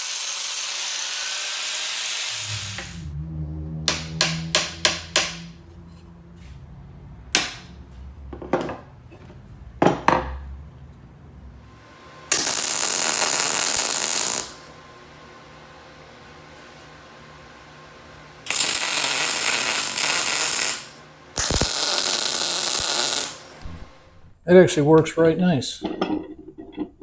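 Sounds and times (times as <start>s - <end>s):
low steady hum: 2.5s - 12.3s, 23.4s - 27.0s
hammer striking steel: 3.9s - 5.6s, 7.3s - 7.8s.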